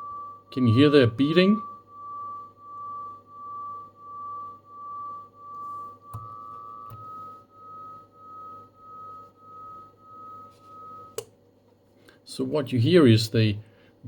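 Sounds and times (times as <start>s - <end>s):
beating high tone: 0.0s - 11.3s.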